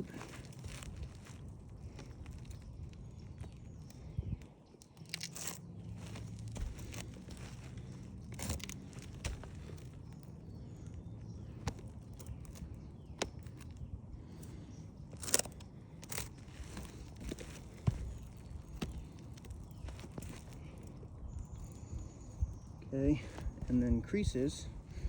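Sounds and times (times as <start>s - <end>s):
taps and scrapes on roof shingles: 0.0s - 10.4s, 14.5s - 21.1s.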